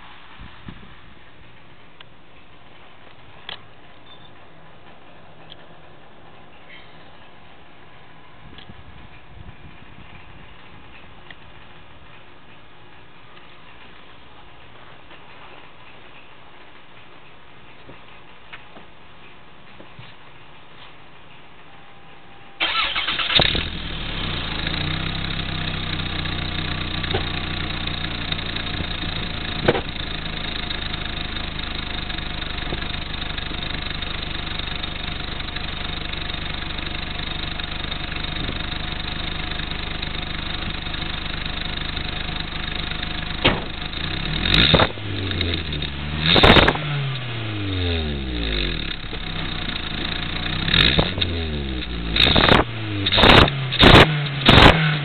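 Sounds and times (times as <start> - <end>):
engine revving: 22.6 - 28.9, 43.4 - 55.0
car engine starting and idling: 22.6 - 55.0.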